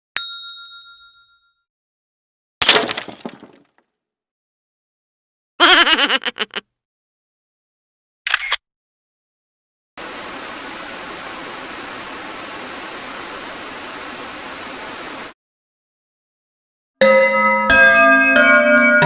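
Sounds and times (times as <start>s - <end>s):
camera shutter clicking: 8.3s - 8.6s
static hiss: 10.0s - 15.3s.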